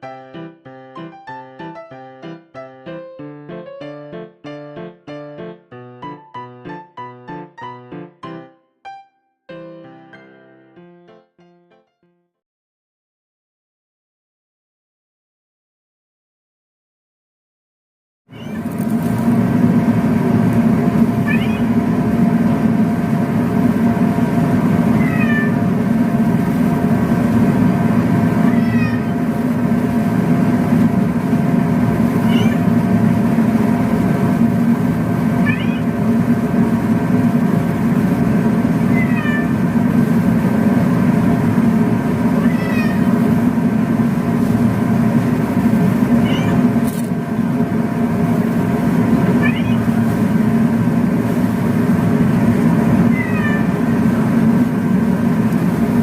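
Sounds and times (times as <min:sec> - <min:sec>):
recorded cat meow: 0:18.3 - 0:18.8, 0:21.2 - 0:21.8, 0:24.9 - 0:25.6, 0:28.4 - 0:29.2, 0:32.2 - 0:32.7, 0:35.4 - 0:36.0, 0:38.8 - 0:39.6, 0:42.3 - 0:43.3, 0:46.1 - 0:46.8, 0:49.3 - 0:50.0, 0:53.1 - 0:53.8
loud steady hum: 0:18.3 - 0:56.0.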